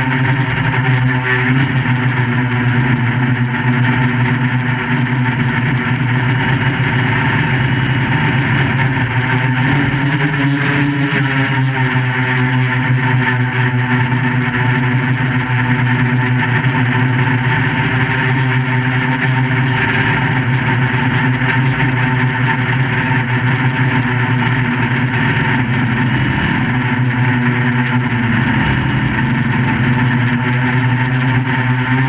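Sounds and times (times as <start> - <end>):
quadcopter motors droning: 0.0 - 32.0.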